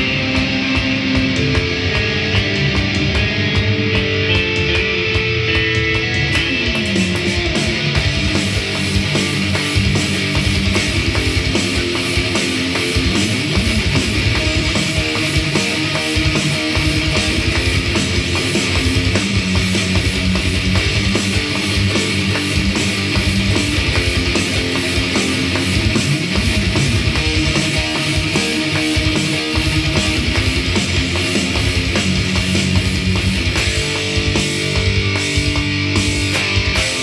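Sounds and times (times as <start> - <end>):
heavy distorted electric guitar: 0.0 - 37.0
programmed metal drums: 0.0 - 37.0.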